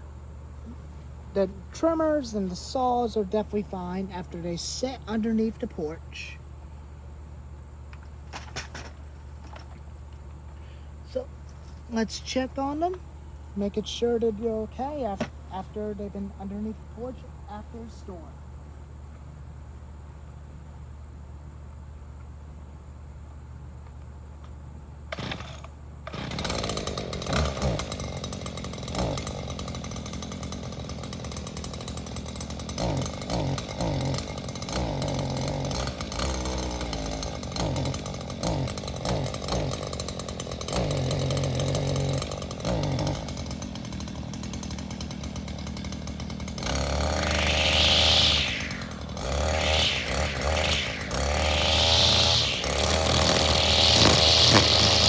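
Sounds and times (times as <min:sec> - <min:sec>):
two-stroke engine revving: 0:25.1 - 0:55.0.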